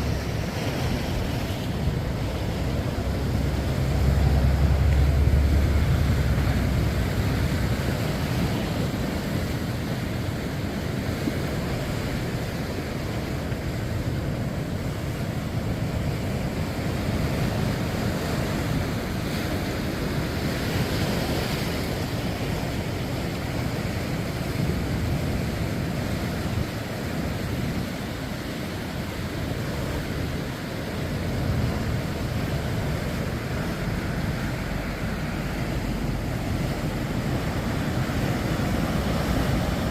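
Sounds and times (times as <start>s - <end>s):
wind buffeting microphone: 0.0s - 12.8s
sea waves washing onto shore: 0.0s - 39.9s.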